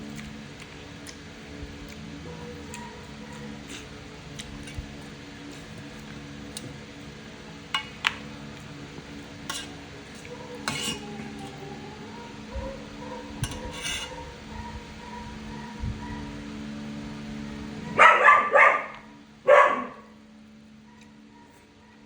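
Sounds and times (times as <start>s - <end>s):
spoon clinking against bowl: 7.7s - 8.2s, 9.4s - 11.5s.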